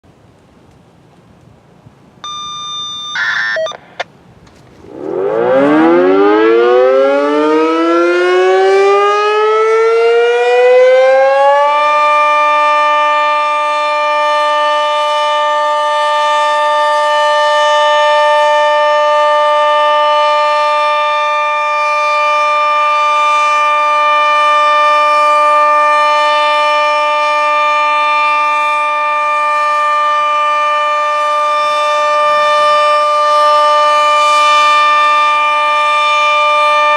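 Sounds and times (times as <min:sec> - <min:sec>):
short electronic beeps: 0:02.2 - 0:04.0
tornado siren winding up: 0:02.2 - 0:04.1, 0:04.8 - 0:14.2.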